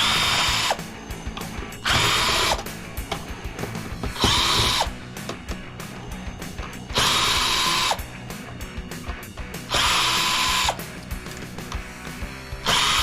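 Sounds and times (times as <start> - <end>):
power drill motor whine: 0.0 - 1.0, 1.8 - 2.7, 4.2 - 5.0, 6.9 - 8.1, 9.7 - 10.8, 12.6 - 13.0.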